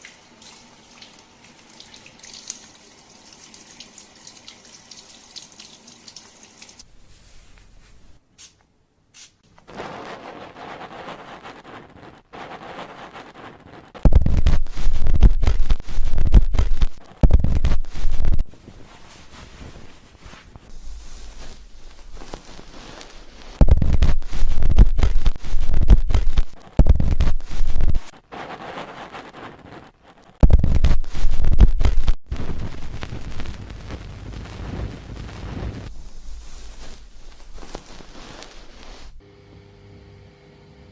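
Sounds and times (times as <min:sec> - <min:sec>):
hands scrubbing hair: 0:17.6 - 0:26.6, 0:35.9 - 0:39.2.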